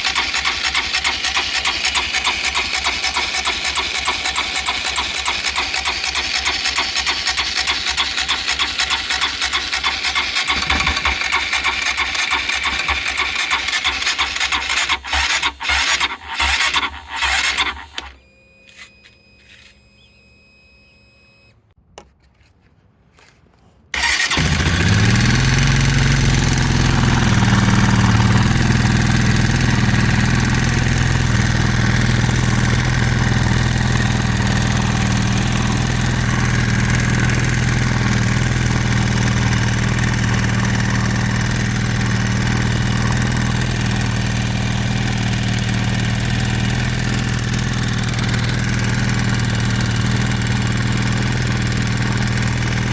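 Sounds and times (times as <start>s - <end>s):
motorcycle engine idling: 0.0s - 17.3s, 24.0s - 52.9s
rapid engine ticking: 0.0s - 17.8s, 24.0s - 52.9s
engine starting: 0.0s - 18.2s, 23.9s - 26.6s.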